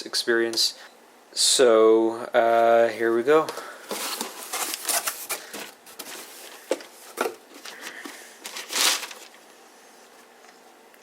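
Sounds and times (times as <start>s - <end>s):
paper packing rustling: 3.8s - 9.6s
cardboard box opening: 3.9s - 6.4s.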